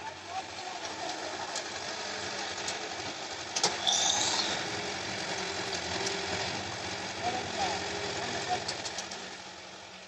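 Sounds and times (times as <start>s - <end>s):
heavy diesel machinery running: 0.0s - 10.0s
brief high squeal: 3.8s - 4.6s.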